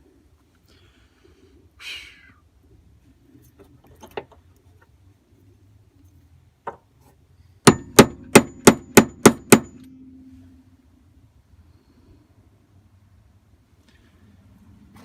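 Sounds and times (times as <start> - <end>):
hammer striking metal: 7.7 - 10.6.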